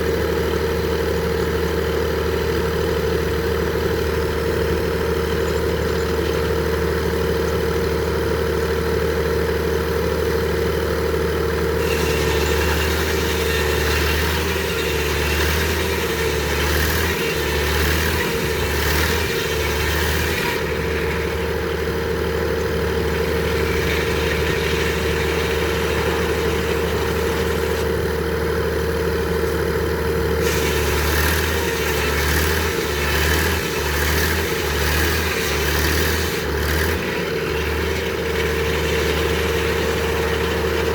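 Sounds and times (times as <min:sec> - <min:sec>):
sawmill engine humming: 0:00.0 - 0:40.9
saw cutting through log: 0:11.5 - 0:40.9
saw whine: 0:11.5 - 0:40.9.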